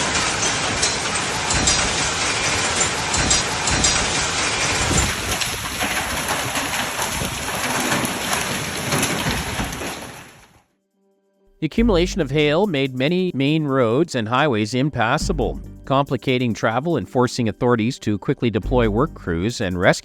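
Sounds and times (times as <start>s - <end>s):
heavy rain pouring: 0.0s - 10.6s
rain hits on surfaces: 0.0s - 10.6s.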